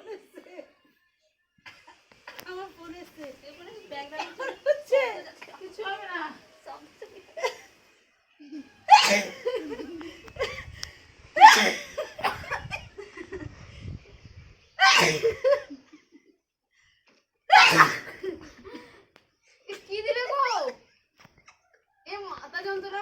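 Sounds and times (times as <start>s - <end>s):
laughter: 0.0s - 1.0s, 4.2s - 5.2s, 7.0s - 7.8s, 8.4s - 13.7s, 14.9s - 16.5s, 18.0s - 19.1s
person sneezing loudly: 8.9s - 9.4s, 11.4s - 11.9s, 14.8s - 15.4s, 17.5s - 18.2s.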